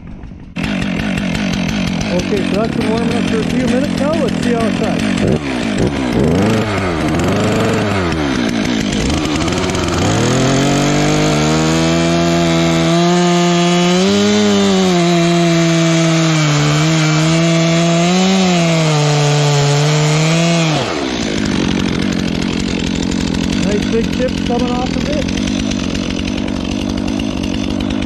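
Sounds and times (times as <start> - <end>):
chainsaw cutting wood: 0.0 - 28.0.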